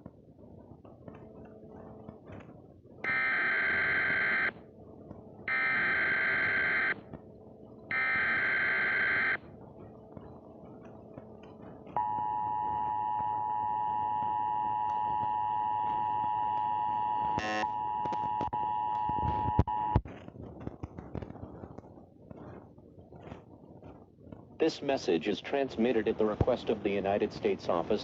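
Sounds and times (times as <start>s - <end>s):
two-tone attention signal: 3.1s - 4.5s, 5.5s - 7.0s, 7.9s - 9.4s, 12.0s - 20.0s
electronic data bursts: 3.1s - 4.6s, 5.5s - 7.0s, 7.9s - 9.4s, 12.0s - 20.0s.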